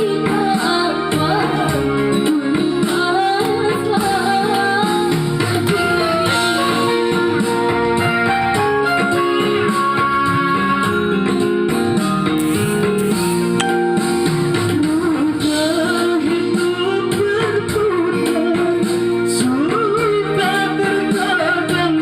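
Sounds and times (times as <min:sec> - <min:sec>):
person singing: 0:00.0 - 0:08.2, 0:14.6 - 0:22.0
guitar accompaniment: 0:00.0 - 0:22.0.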